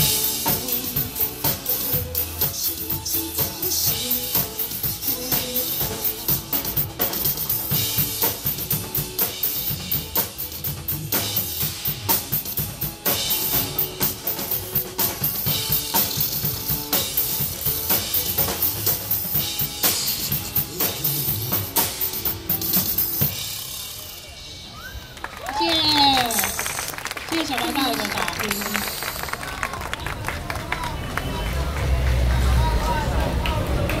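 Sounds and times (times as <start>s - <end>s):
drum kit playing: 0.0s - 24.6s
instrumental backing track: 0.0s - 24.6s.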